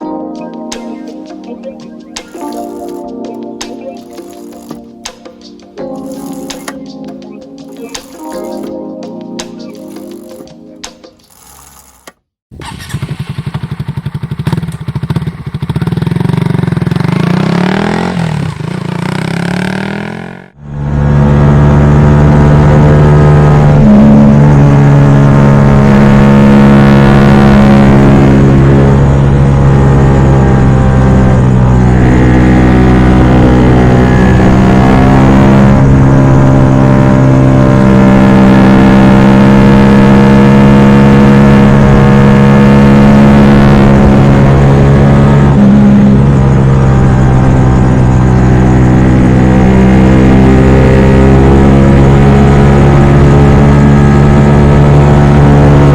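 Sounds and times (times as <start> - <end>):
motorcycle engine drone: 0.0 - 55.9.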